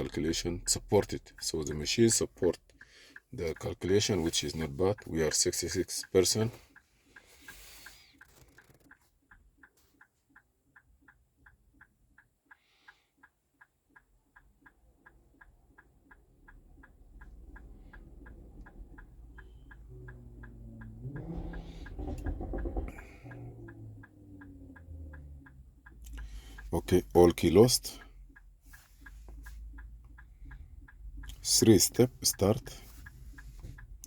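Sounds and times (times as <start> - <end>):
hazard flasher ticking: 14.4 - 34.0
low rumbling and handling noise: 19.3 - 28.0.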